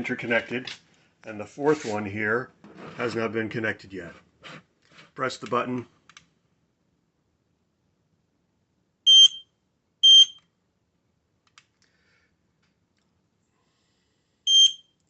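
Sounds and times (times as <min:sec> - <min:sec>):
smoke alarm high-pitched beeps: 0:09.1 - 0:10.4, 0:14.5 - 0:15.0.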